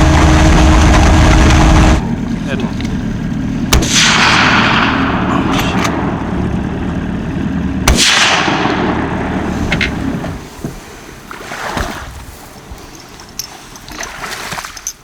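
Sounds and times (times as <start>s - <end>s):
outboard motor droning: 0.0s - 15.0s
rifle shot echoing: 3.7s - 6.4s, 7.8s - 9.5s.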